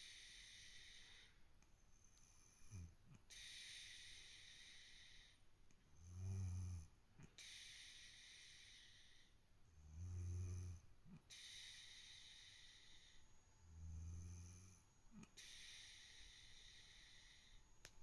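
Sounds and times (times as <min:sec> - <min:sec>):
kitten hissy breaths: 0:00.0 - 0:01.5, 0:02.2 - 0:05.5, 0:07.3 - 0:09.5, 0:11.3 - 0:13.7, 0:14.8 - 0:17.8
kitten snoring softly: 0:02.0 - 0:17.9.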